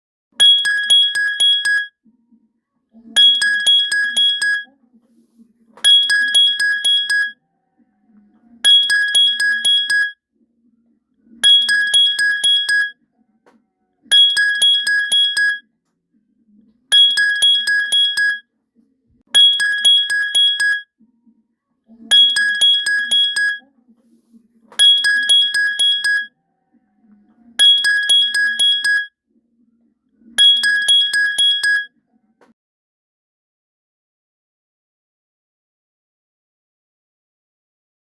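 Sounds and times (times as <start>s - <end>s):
phone alarm ringing pips: 0.4s - 2.0s, 3.2s - 4.7s, 5.8s - 7.4s, 8.6s - 10.2s, 11.4s - 13.0s, 14.1s - 15.6s, 16.9s - 18.4s, 19.3s - 20.9s, 22.1s - 23.6s, 24.8s - 26.3s, 27.6s - 29.1s, 30.4s - 31.9s.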